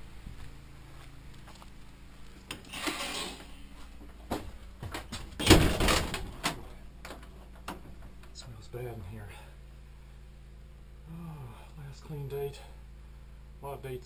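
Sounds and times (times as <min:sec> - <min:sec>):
door closing on spring: 0:02.5 - 0:03.4, 0:05.2 - 0:08.2
plastic door scraping open: 0:02.6 - 0:03.5.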